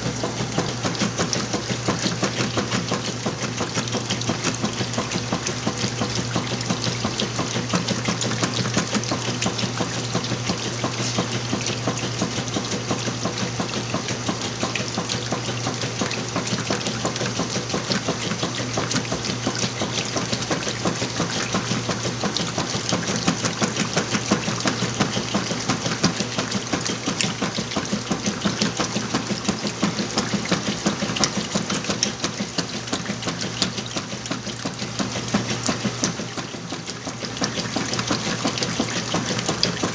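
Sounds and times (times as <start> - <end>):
washing machine motor hum: 0.0 - 39.9.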